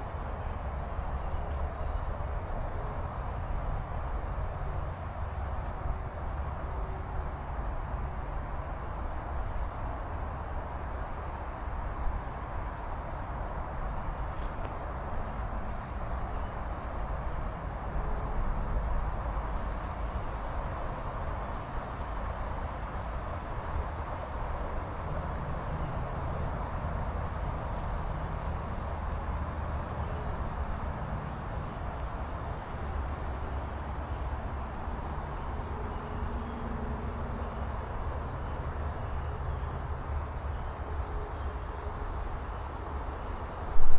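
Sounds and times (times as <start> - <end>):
wind buffeting microphone: 43.6 - 43.9.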